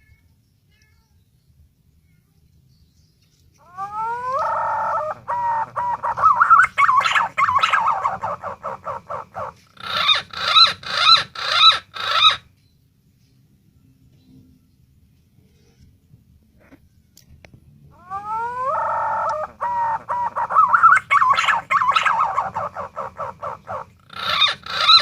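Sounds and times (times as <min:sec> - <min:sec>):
pigeon song: 0:03.0 - 0:12.7, 0:17.8 - 0:25.0.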